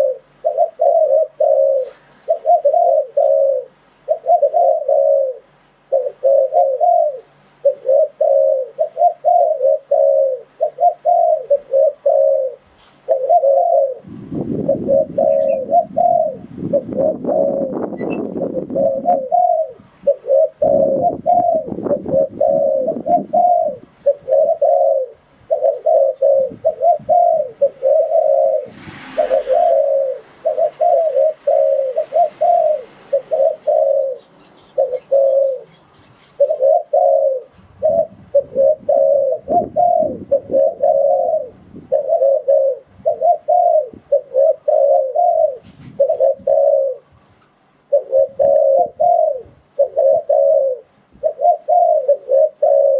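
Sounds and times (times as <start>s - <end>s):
dove cooing: 0.0s - 47.1s, 47.9s - 52.9s
short hiss: 28.7s - 29.8s.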